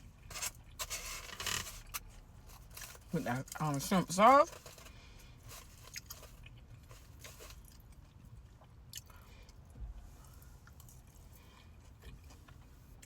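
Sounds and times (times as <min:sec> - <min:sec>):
person chewing: 0:04.5 - 0:13.0.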